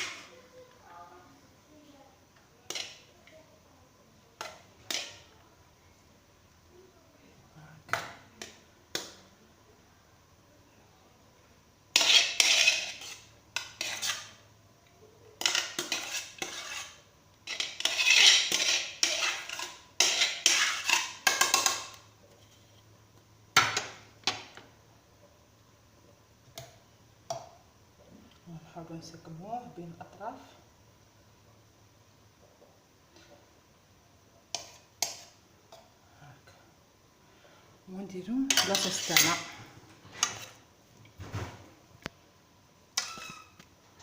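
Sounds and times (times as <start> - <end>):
spoon scraping a cooking pot: 2.7 - 3.1, 4.4 - 5.3, 11.9 - 14.5, 15.4 - 22.9, 34.5 - 35.9, 38.5 - 40.6, 43.0 - 43.7.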